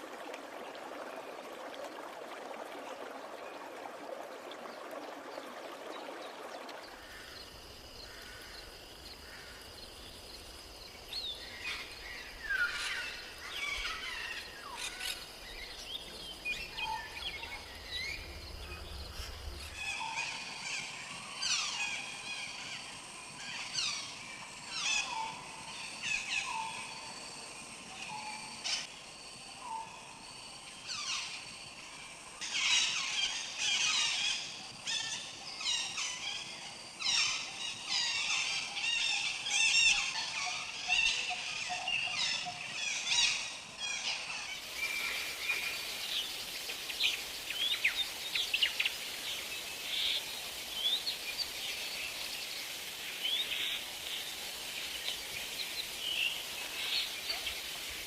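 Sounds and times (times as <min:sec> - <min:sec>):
steady hiss: 0:06.8 - 0:28.0, 0:35.6 - 0:58.0
birds chirping and trilling: 0:07.1 - 0:22.8, 0:32.4 - 0:58.0.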